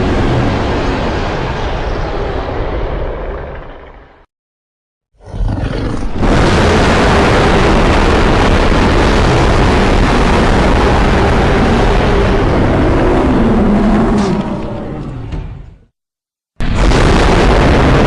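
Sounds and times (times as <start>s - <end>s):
giant monster roar: 5.2s - 15.3s.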